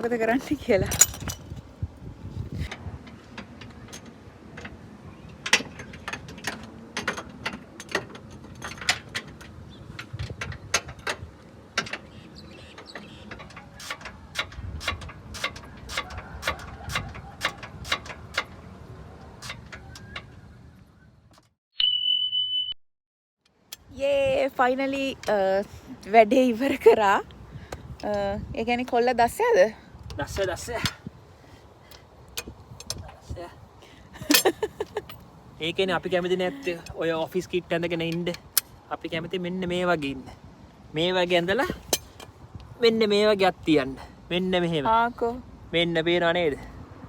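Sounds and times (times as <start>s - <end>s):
metal tools clinking: 0.7s - 1.6s, 5.4s - 11.2s, 34.2s - 35.3s, 41.8s - 42.4s
high-pitched beep: 21.8s - 22.8s.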